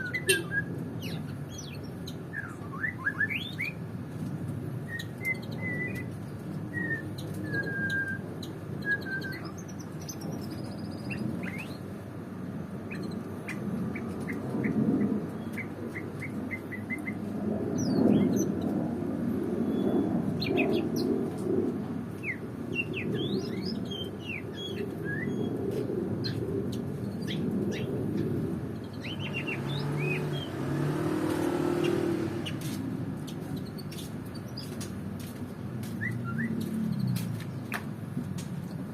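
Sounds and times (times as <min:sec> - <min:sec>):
bird singing whistles and chirps: 0:00.0 - 0:03.8, 0:04.9 - 0:11.8, 0:22.2 - 0:25.6, 0:28.9 - 0:30.6, 0:36.0 - 0:36.7.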